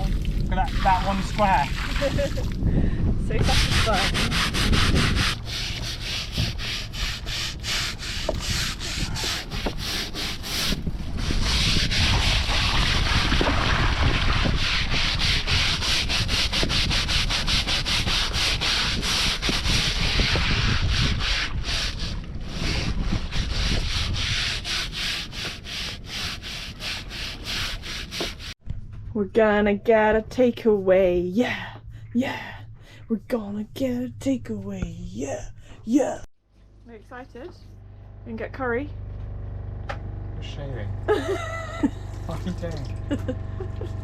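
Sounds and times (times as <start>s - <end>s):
stiff brush scrubbing deck: 0.6s - 2.5s, 3.3s - 28.6s.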